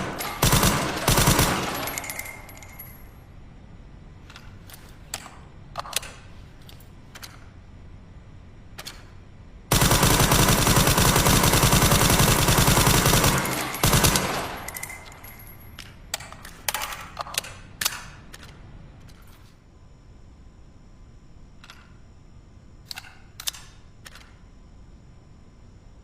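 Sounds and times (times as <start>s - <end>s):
suppressed rifle automatic fire: 0.0s - 2.2s, 9.7s - 14.9s.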